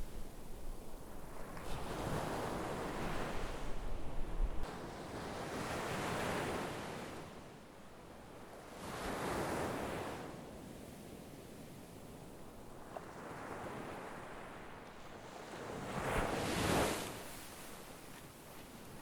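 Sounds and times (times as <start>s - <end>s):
sea waves breaking on shore: 0.0s - 3.9s, 12.6s - 19.0s
wind rumble on microphone: 0.0s - 19.0s.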